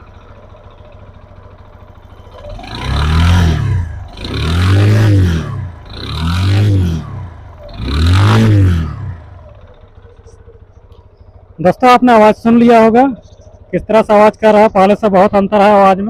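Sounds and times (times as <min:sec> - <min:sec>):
motorcycle engine idling and revving: 0:00.0 - 0:16.0.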